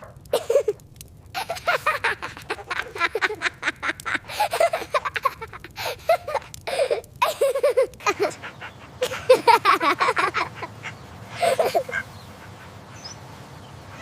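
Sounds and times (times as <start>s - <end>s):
young child giggling: 0.4s - 0.8s, 1.4s - 10.7s, 11.4s - 12.1s.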